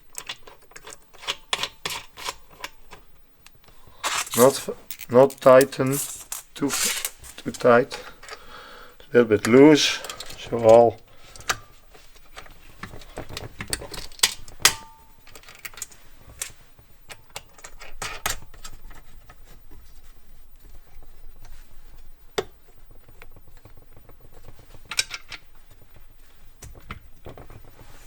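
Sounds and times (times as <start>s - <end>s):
wrench clinking on metal parts: 4.0s - 8.0s.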